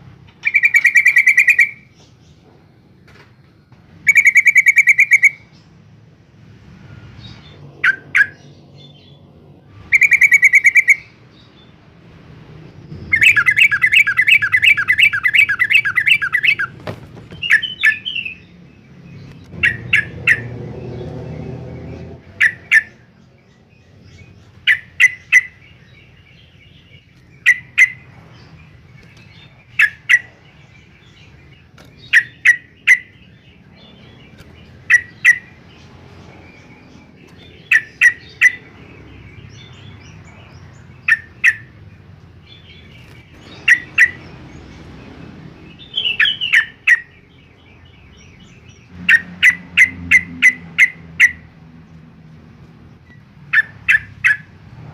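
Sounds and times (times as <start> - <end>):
bird chattering: 0.3 - 1.9, 4.0 - 5.6, 9.8 - 11.2, 12.9 - 18.6, 19.2 - 20.5, 22.3 - 23.3, 24.0 - 44.9, 45.6 - 51.7, 53.0 - 54.6.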